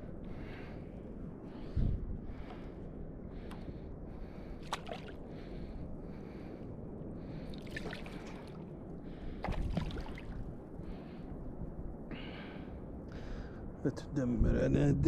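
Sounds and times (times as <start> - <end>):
water lapping against boat: 7.5 - 8.6, 9.4 - 10.4.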